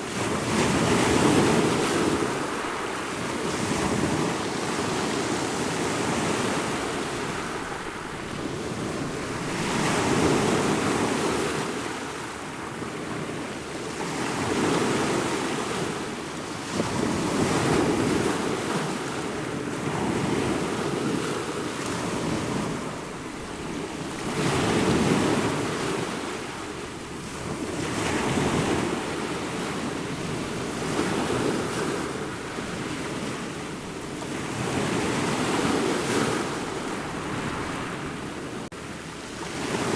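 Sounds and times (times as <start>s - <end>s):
ocean waves breaking: 0.0s - 39.9s.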